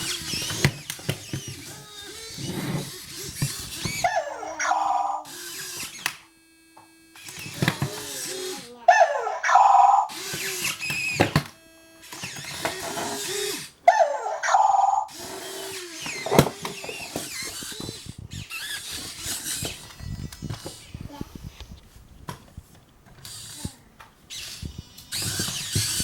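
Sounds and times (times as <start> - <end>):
small motors whirring: 0.0 - 21.8, 23.2 - 26.0
toy robot chirps and bleeps: 2.9 - 6.0, 7.2 - 11.2, 12.2 - 21.0.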